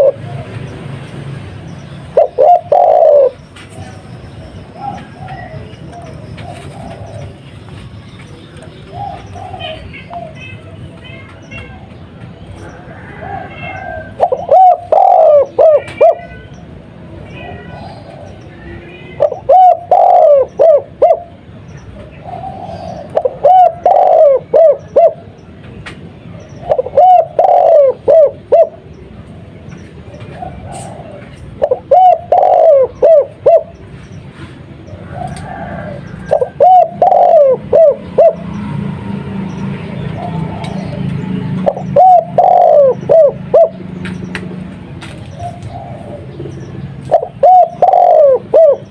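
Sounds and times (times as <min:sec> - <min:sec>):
dove cooing: 0:00.0 - 0:00.7, 0:02.1 - 0:04.1, 0:04.7 - 0:07.4, 0:08.8 - 0:10.4, 0:12.8 - 0:16.3, 0:19.2 - 0:21.4, 0:22.0 - 0:25.4, 0:26.6 - 0:28.9, 0:30.1 - 0:33.9, 0:34.9 - 0:38.7, 0:40.0 - 0:44.0, 0:45.3 - 0:48.9.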